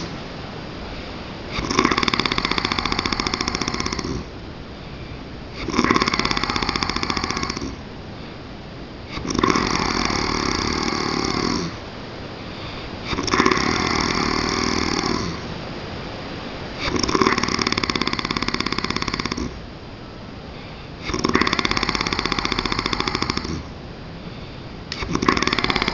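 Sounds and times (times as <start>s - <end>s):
quiet breathing: 0.0s - 25.9s
man snoring: 1.5s - 4.3s, 5.5s - 7.8s, 9.1s - 11.8s, 12.6s - 15.5s, 16.8s - 19.6s, 21.0s - 23.8s, 24.9s - 25.9s.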